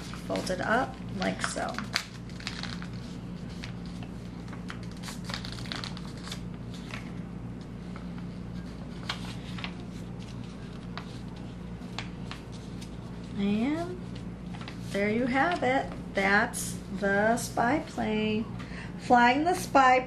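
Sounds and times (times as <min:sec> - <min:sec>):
paper crinkling and rustling: 0:00.0 - 0:16.0
steady low hum: 0:00.0 - 0:20.0.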